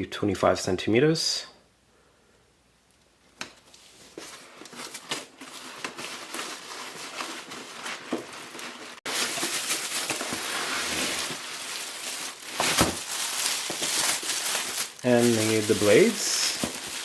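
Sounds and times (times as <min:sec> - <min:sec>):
packaging crinkling: 0:03.4 - 0:17.0.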